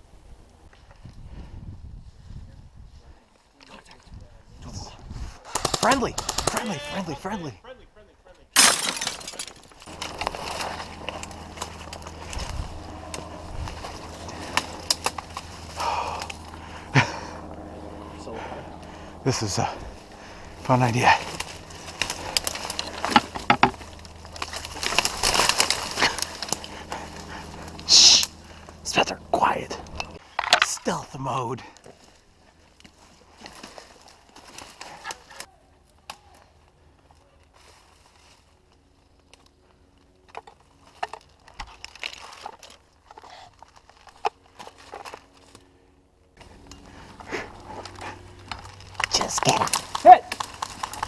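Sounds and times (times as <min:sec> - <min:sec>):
twigs crackling underfoot: 0:20.0 - 0:30.2, 0:46.4 - 0:51.0.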